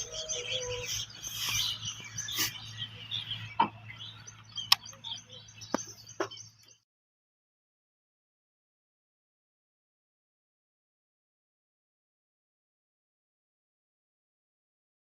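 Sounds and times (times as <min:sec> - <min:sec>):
small birds chirping: 0:00.0 - 0:06.8.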